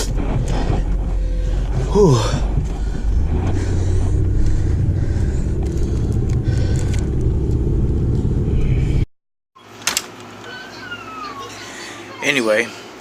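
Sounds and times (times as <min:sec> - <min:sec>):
car engine rumble: 0:00.0 - 0:09.1
road noise: 0:00.0 - 0:09.1.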